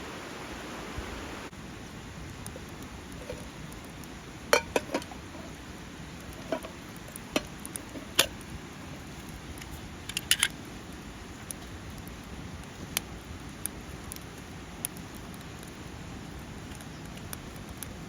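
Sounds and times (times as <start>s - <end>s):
background hiss: 0.0s - 18.0s
metal cookware clinking: 4.5s - 5.5s, 6.4s - 8.3s.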